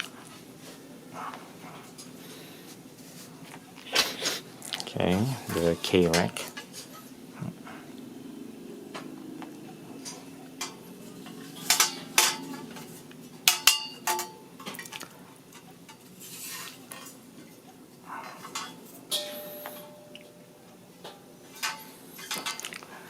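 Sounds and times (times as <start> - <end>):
metal parts clinking and knocking: 10.0 - 14.9.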